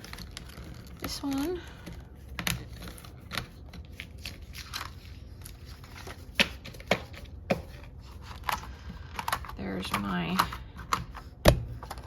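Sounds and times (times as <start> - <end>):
paper rustling: 0.0 - 9.4.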